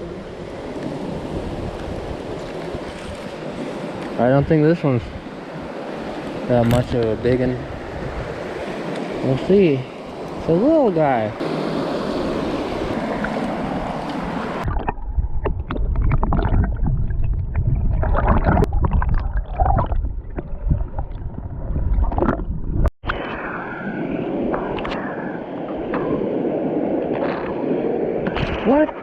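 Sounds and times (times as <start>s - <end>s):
water sloshing and gurgling: 0.0s - 29.0s
wind and handling knocks on microphone: 6.6s - 9.1s, 13.2s - 23.2s.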